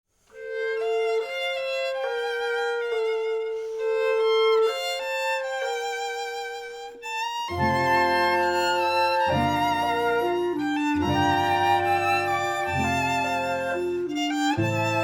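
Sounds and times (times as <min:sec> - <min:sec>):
solo violin playing slow melody: 0:00.3 - 0:15.0.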